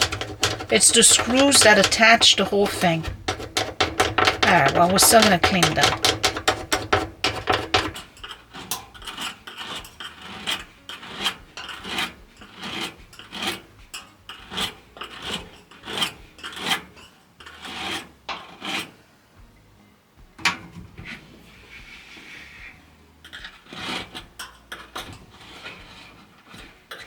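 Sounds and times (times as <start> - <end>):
hand scrubbing strokes: 0.0 - 8.6, 21.3 - 22.9.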